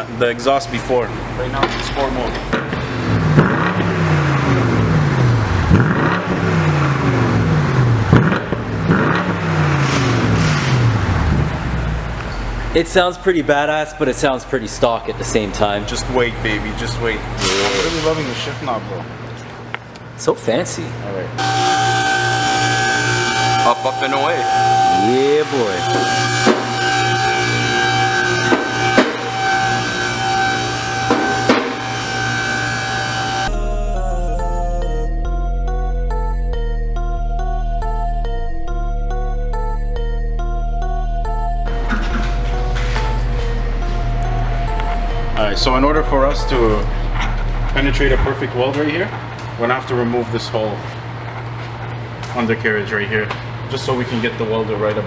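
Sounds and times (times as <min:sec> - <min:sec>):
car engine revving: 0:00.0 - 0:19.4, 0:21.3 - 0:33.5, 0:41.7 - 0:52.2
sharp drum hits: 0:17.4 - 0:18.7.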